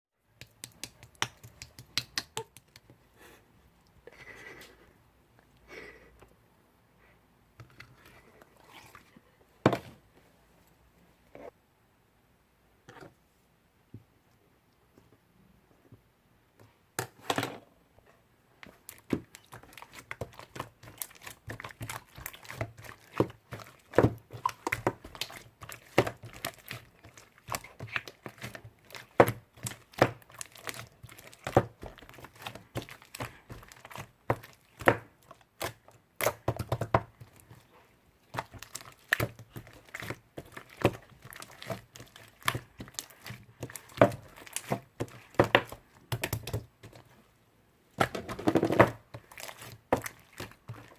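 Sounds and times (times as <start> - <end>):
slime being squished by hand: 18.7 - 47.0.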